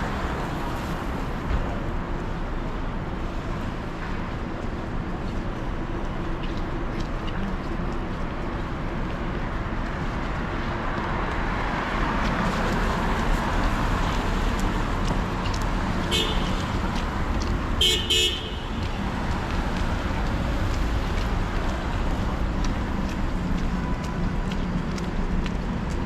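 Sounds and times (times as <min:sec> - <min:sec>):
street traffic noise: 0:00.0 - 0:26.0
car horn tooting: 0:16.1 - 0:16.7, 0:17.8 - 0:18.8.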